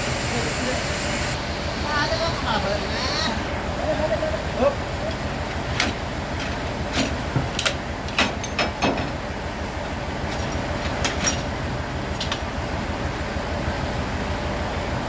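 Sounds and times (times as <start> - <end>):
machinery droning: 0.0 - 8.2.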